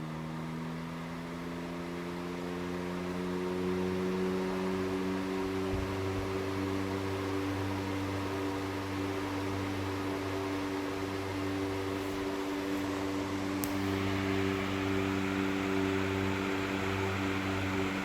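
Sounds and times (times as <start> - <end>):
ceiling fan motor hum: 0.0 - 18.0
rush of air from fan: 5.5 - 18.0
light tick: 13.6 - 14.0.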